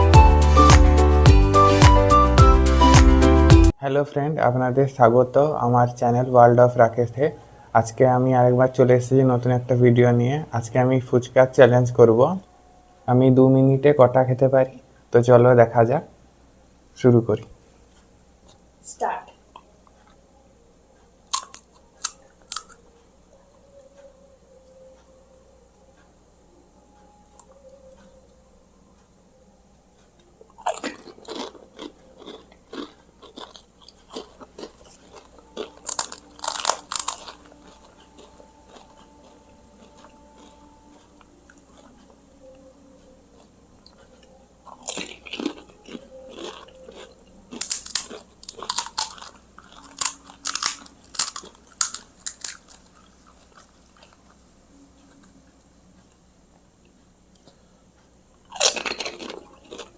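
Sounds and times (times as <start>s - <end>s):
quiet chewing: 19.4s - 26.1s, 26.9s - 28.4s, 30.0s - 59.9s
crisp shells crunching: 30.6s - 40.5s, 44.7s - 54.2s, 58.5s - 59.9s.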